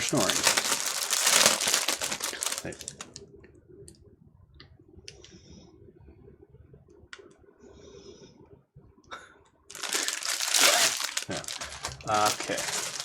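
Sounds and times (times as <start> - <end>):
plastic bag crinkling and tearing: 0.0 - 3.2, 9.7 - 13.0.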